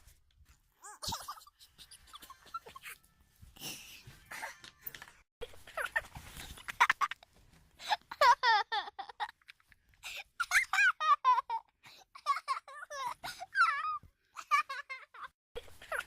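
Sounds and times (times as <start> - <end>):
young children laughing: 0.8 - 3.1, 5.6 - 9.7, 10.3 - 16.0.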